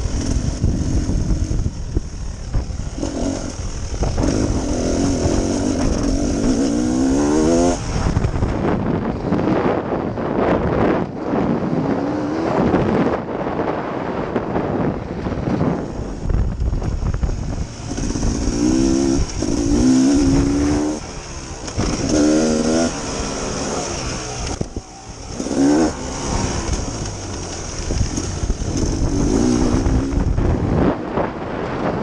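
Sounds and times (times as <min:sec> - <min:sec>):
dirt bike engine revving: 0:00.0 - 0:08.8, 0:15.6 - 0:31.3
wind rumbling on microphone: 0:00.0 - 0:32.0.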